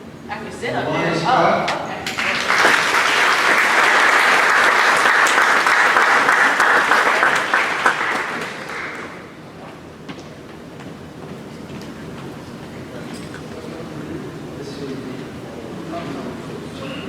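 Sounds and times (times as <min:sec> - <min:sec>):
audience applauding: 0:02.1 - 0:09.5.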